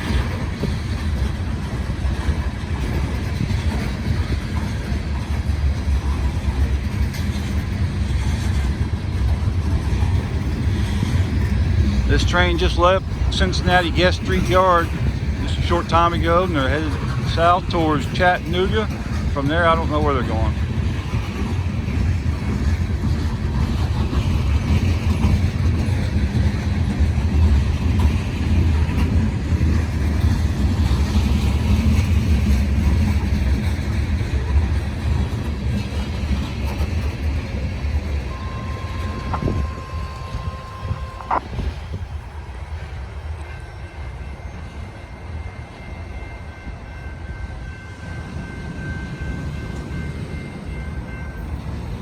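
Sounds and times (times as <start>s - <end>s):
freight train rumbling: 0.0s - 52.0s
steady tone: 38.2s - 41.7s.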